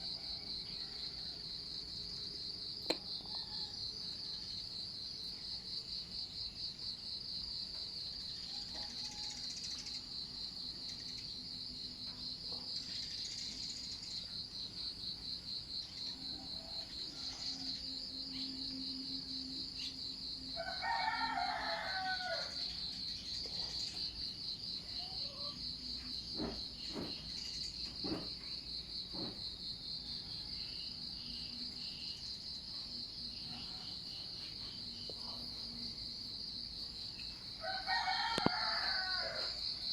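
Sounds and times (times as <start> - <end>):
high insect trill: 0.0 - 39.9
rooster crowing: 3.2 - 4.6, 8.5 - 9.6, 20.5 - 22.8, 37.6 - 39.9.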